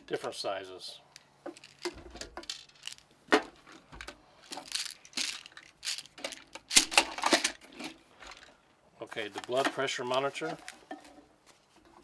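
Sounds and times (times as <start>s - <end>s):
toolbox handling rustles and knocks: 3.3s - 8.5s, 9.1s - 12.0s.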